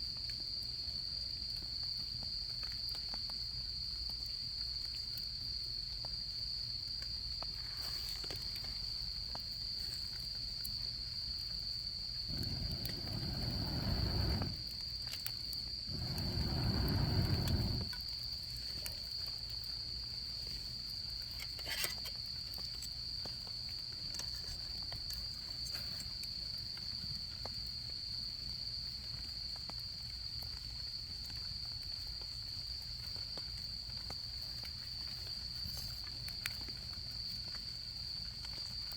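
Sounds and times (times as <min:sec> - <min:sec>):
insects trilling: 0:06.1 - 0:38.9
campfire crackling: 0:12.0 - 0:19.1
low rushing swells: 0:15.9 - 0:17.9.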